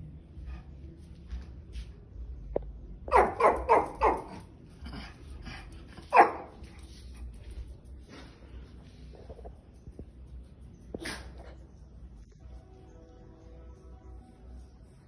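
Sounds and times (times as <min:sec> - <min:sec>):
dog barking: 0:03.1 - 0:04.5, 0:06.1 - 0:06.6.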